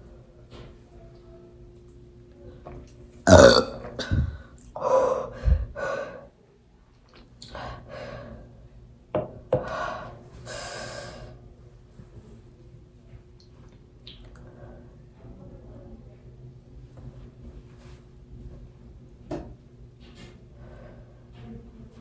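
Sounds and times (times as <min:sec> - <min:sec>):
woman burping loudly: 0:03.3 - 0:04.2.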